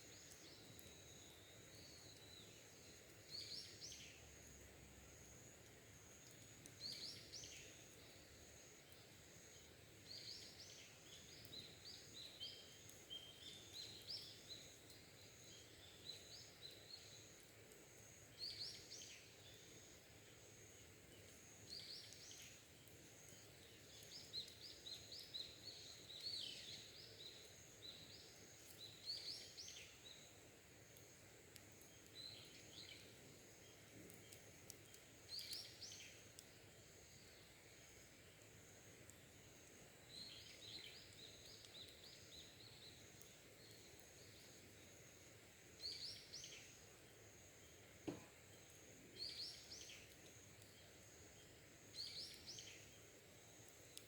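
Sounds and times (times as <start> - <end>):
wild birds singing: 6.2 - 17.4, 21.1 - 30.4, 31.8 - 37.7, 39.1 - 45.2, 45.8 - 54.0.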